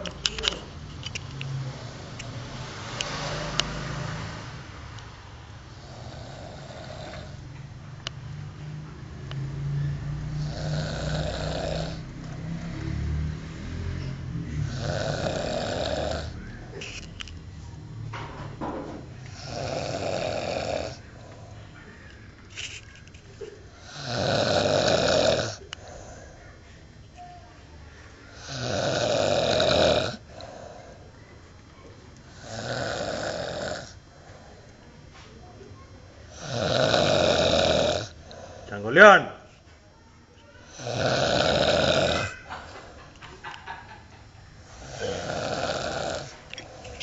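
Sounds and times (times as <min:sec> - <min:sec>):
person snoring: 0:01.6 - 0:04.7, 0:05.7 - 0:07.4, 0:09.6 - 0:16.5, 0:19.3 - 0:21.6, 0:23.8 - 0:26.4, 0:28.3 - 0:31.1, 0:32.3 - 0:34.0, 0:36.3 - 0:38.6, 0:40.7 - 0:42.8, 0:44.6 - 0:47.0.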